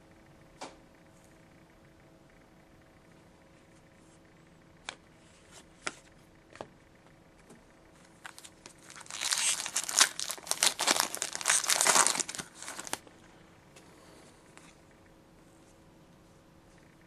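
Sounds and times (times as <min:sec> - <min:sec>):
foil wrapper crinkling and tearing: 0:08.2 - 0:13.0.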